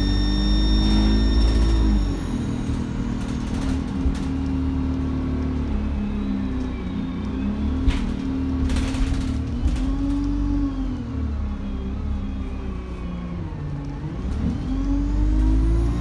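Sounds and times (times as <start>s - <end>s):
turbo whistle: 0.0s - 2.8s
bus diesel engine accelerating: 0.0s - 16.0s.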